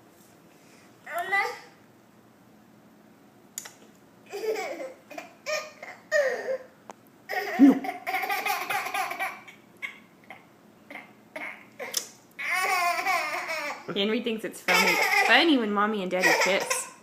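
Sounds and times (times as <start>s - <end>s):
toddler laughing: 4.3s - 6.7s, 7.3s - 13.9s, 14.7s - 15.4s, 16.2s - 17.0s.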